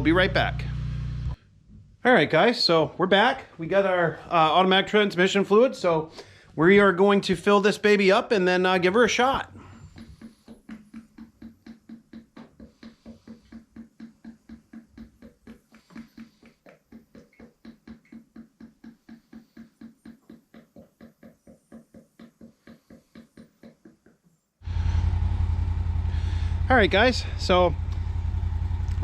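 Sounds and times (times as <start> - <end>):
loud steady hum: 24.6 - 29.0.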